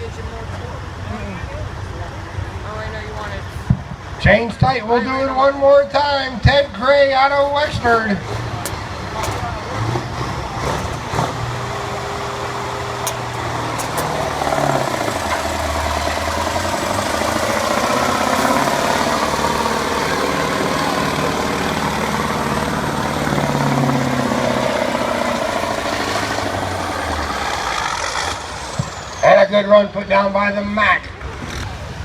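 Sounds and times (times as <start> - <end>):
diesel truck engine under load: 0.0 - 30.4.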